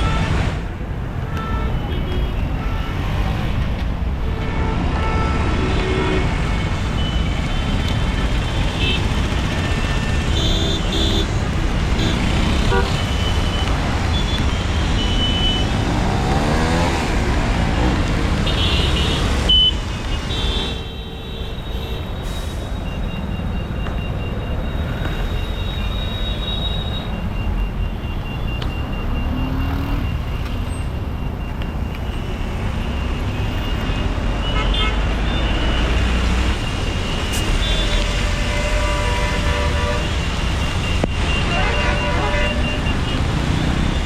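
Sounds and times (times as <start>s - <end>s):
passing vehicles: 0.0s - 44.0s
car horn toots: 41.3s - 43.0s.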